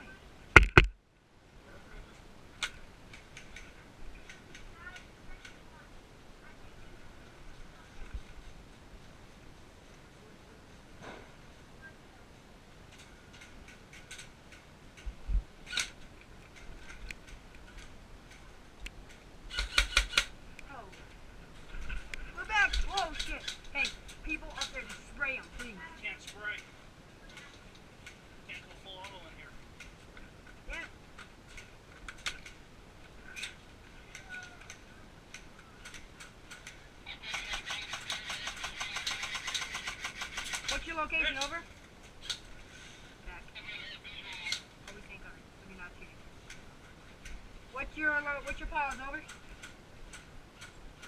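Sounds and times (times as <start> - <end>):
sharp ticks and clicks: 16.6 - 20.7, 34.7 - 41.5
airsoft gun firing: 19.5 - 20.4.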